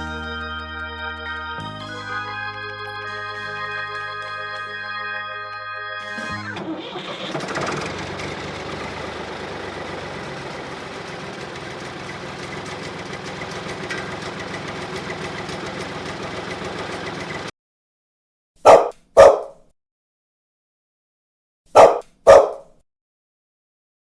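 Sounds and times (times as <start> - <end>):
tractor engine idling: 6.1 - 17.5.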